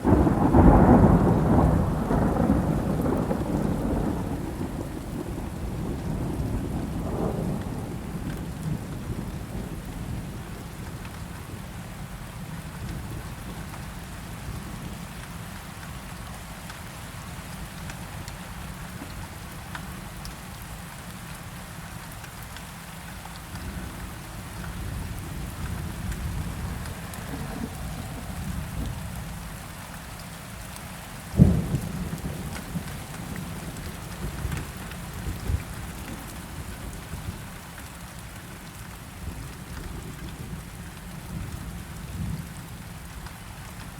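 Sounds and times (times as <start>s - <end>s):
steady rain: 0.0s - 43.9s
thunder rumbling: 0.1s - 10.7s, 23.6s - 29.6s, 31.4s - 37.4s.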